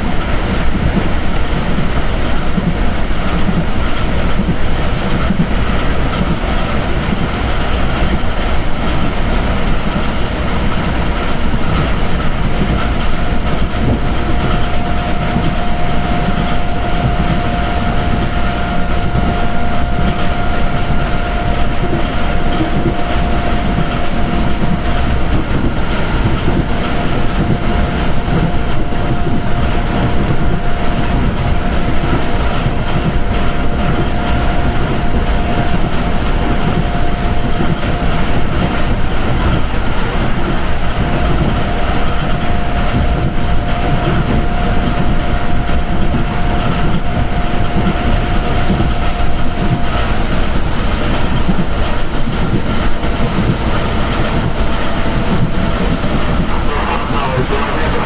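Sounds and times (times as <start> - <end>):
train wheels rumbling on rails: 0.0 - 58.0
high whine: 56.0 - 58.0.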